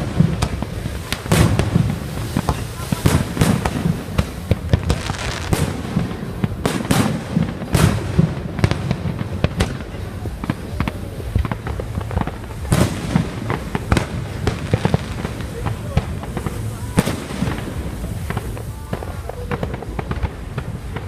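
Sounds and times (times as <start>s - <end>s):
fireworks bangs and crackles: 0.0s - 21.0s
low rumble of launches: 0.0s - 21.0s.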